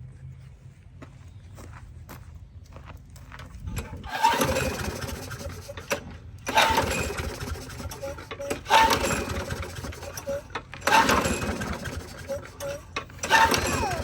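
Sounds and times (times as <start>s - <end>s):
lawn mower pull-start: 3.6s - 14.0s.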